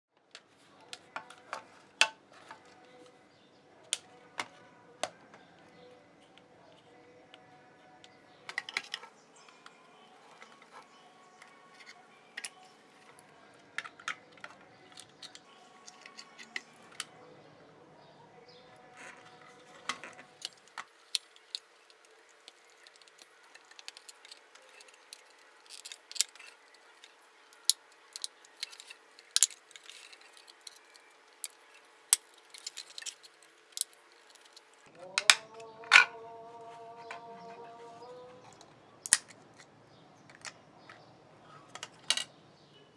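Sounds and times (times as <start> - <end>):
plastic parts clicking and snapping: 13.8 - 17.1, 19.9 - 35.4, 39.1 - 39.3.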